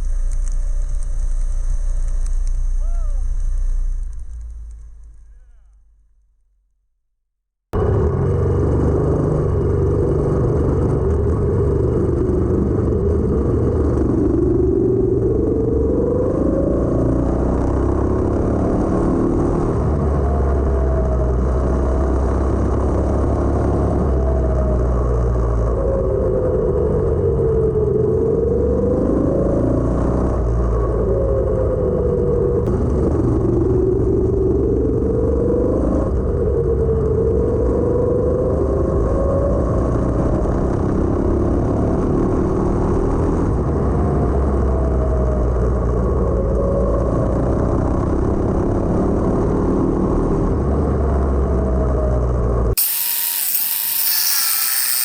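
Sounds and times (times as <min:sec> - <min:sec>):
go-kart engine revving: 0:07.8 - 0:15.2.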